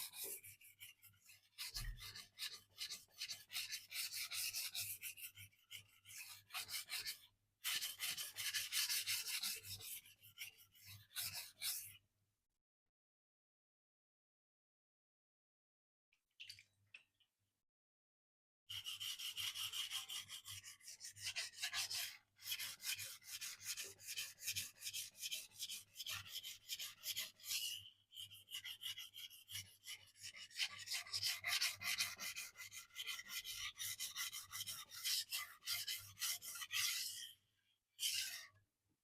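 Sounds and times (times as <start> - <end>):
knife scraping on sharpening stone: 28.4 - 37.4, 38.0 - 38.5.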